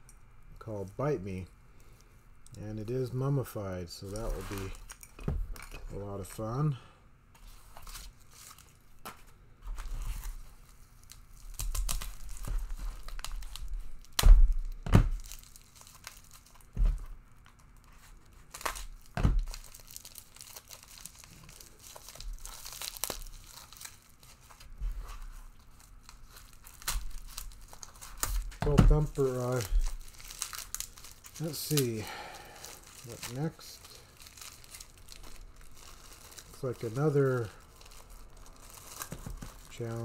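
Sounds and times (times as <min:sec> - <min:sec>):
paper tearing and crinkling: 0:04.0 - 0:05.0, 0:09.8 - 0:40.0.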